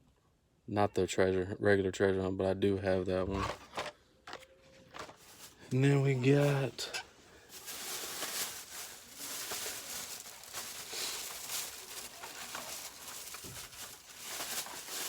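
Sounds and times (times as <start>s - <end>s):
packaging rustling and crinkling: 3.4s - 15.0s.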